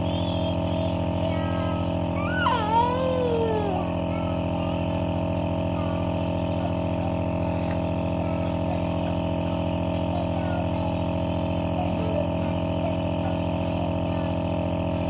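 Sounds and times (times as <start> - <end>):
machine hum: 0.0 - 10.0.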